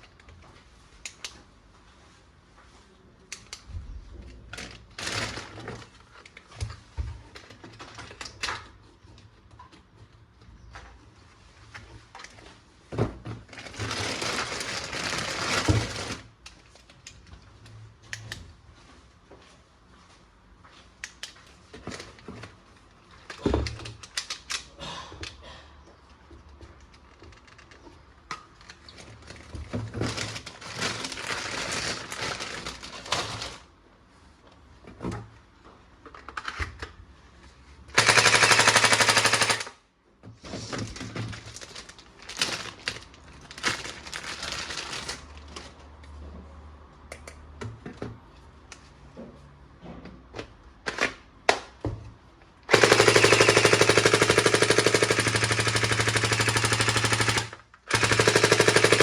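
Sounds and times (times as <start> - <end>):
plastic parts clicking and rustling: 3.3 - 10.2, 13.2 - 18.4, 21.1 - 25.4, 26.4 - 33.7, 36.0 - 37.0, 40.6 - 45.8, 52.7 - 59.0
toy gun machine-gun sound effect: 52.7 - 59.0.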